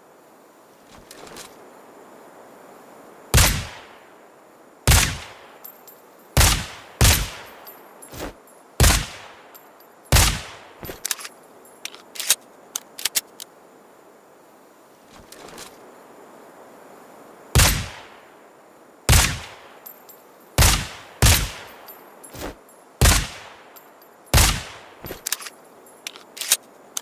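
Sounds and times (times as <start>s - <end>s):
suppressed pistol shots: 3.4s - 3.8s, 4.9s - 5.4s, 6.4s - 7.5s, 8.8s - 9.4s, 10.1s - 11.2s, 17.6s - 18.1s, 19.1s - 19.6s, 20.6s - 21.7s, 23.0s - 23.6s, 24.3s - 25.5s
small sharp clicks: 10.8s - 13.5s, 21.2s - 27.0s.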